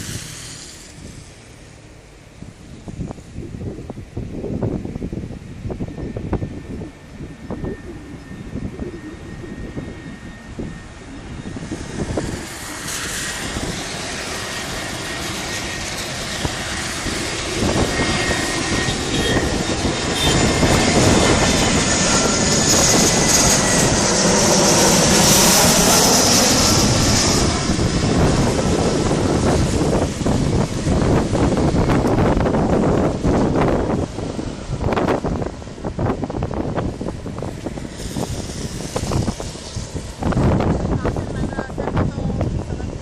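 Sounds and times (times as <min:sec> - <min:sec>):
jet airliner passing low: 0:00.0 - 0:43.0.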